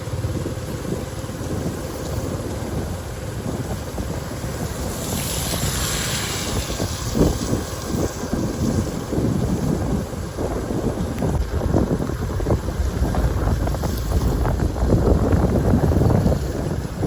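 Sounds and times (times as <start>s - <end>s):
wind buffeting microphone: 0.0s - 17.0s
rushing hiss: 4.6s - 9.1s.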